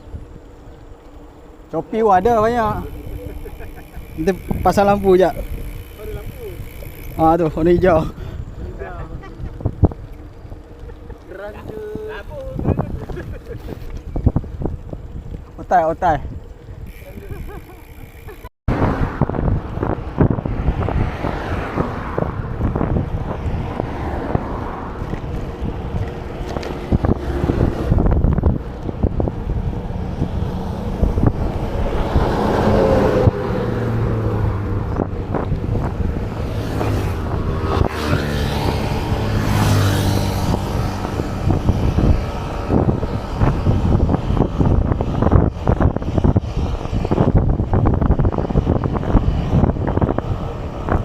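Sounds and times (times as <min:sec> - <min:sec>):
low hum: 0:00.0 - 0:15.6
wind buffeting microphone: 0:00.0 - 0:51.0.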